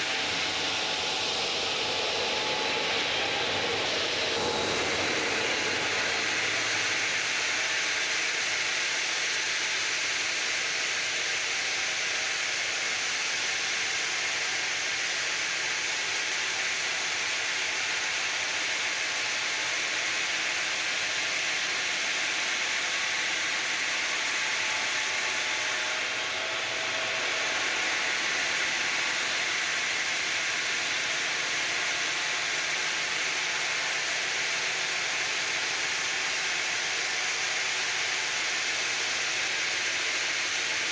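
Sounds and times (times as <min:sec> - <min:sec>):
stone cutting machine grinding: 0:00.0 - 0:10.5, 0:21.3 - 0:40.8.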